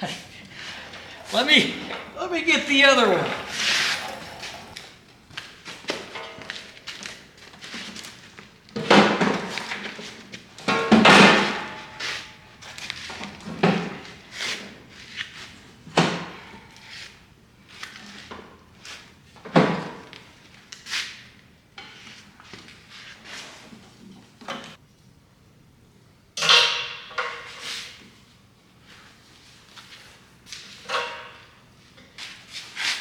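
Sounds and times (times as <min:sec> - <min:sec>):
welder clunking onto metal cart: 0:00.4 - 0:04.8, 0:10.7 - 0:12.0.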